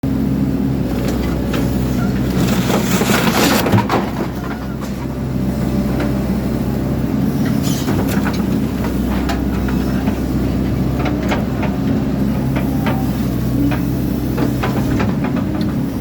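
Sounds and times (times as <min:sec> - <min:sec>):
diesel engine running: 0:00.0 - 0:16.0
metal crunching and crushing: 0:00.9 - 0:05.2.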